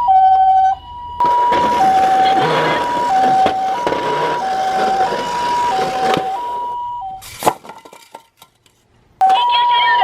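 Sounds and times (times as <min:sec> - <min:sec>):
toy siren two-tone: 0:00.0 - 0:07.2.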